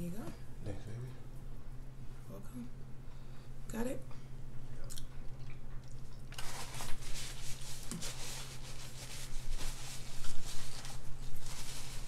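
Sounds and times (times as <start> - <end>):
steady low hum: 0.0 - 12.0
crab legs crackling and rustling: 5.4 - 12.0.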